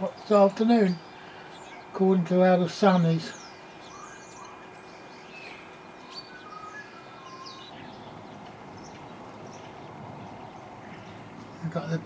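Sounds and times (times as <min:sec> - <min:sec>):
small birds chirping: 0:00.0 - 0:12.0
steady background hiss: 0:00.0 - 0:12.0
bird whistled notes: 0:03.8 - 0:04.7, 0:05.3 - 0:08.0.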